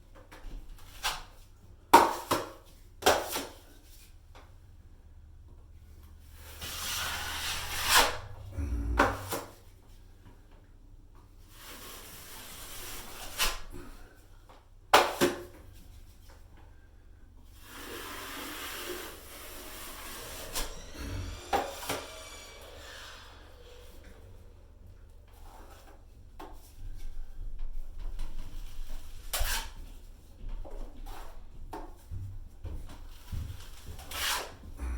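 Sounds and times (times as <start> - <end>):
drywall knife scraping: 6.4 - 9.6, 11.6 - 14.0, 17.6 - 24.5, 29.2 - 29.8, 33.7 - 34.7.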